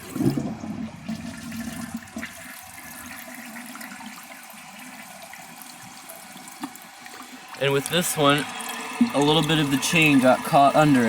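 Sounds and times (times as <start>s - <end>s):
toilet flushing: 0.0s - 11.0s.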